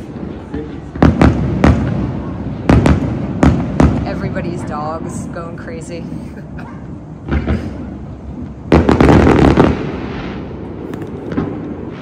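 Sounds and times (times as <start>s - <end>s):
firework bang: 7.2s - 8.0s, 8.7s - 12.0s
fireworks crackling pops: 7.2s - 12.0s.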